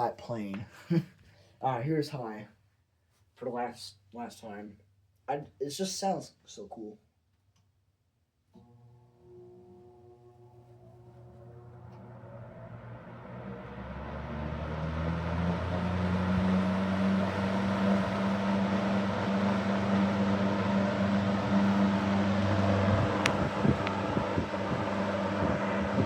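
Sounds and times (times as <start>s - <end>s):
box fan motor humming: 8.6s - 26.0s.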